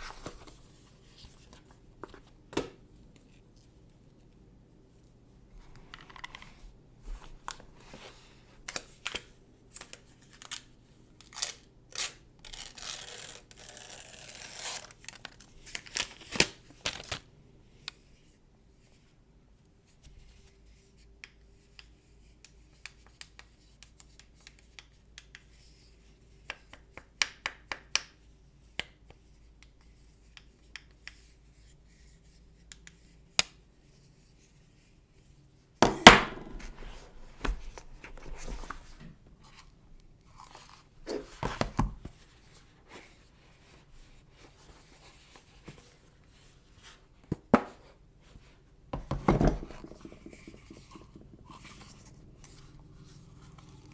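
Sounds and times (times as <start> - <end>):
packaging rustling and scraping: 0.0 - 2.3.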